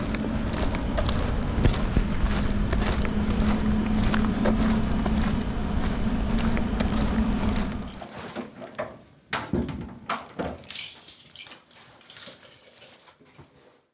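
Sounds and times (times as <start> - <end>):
low rumble: 0.0 - 8.0.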